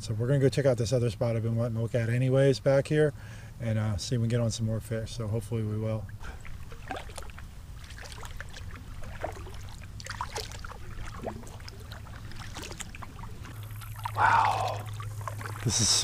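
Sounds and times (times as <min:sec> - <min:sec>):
low steady rumble: 0:00.0 - 0:16.0
paddle splashing water: 0:06.0 - 0:16.0.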